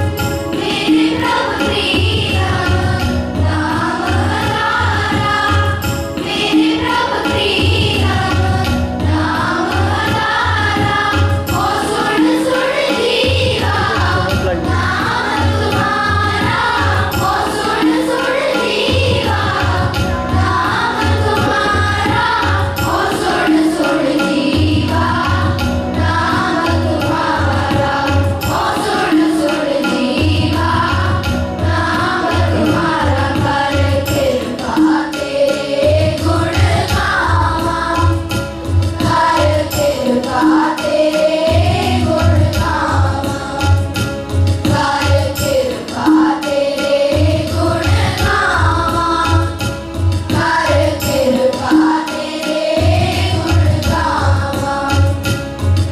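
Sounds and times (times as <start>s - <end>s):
children singing a hymn: 0.0s - 55.6s
low drum beat: 13.3s - 17.4s, 19.0s - 23.7s.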